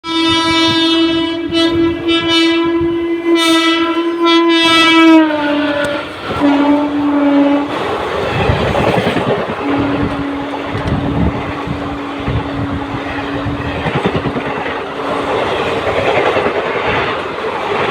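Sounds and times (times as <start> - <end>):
train horn blasts: 0.0 - 8.0, 9.6 - 13.6
train coaches rushing and clattering: 0.0 - 17.9.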